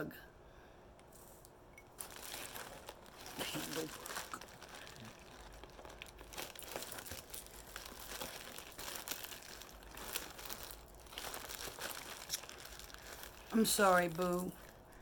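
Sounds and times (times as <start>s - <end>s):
packing material crinkling: 1.1s - 14.9s.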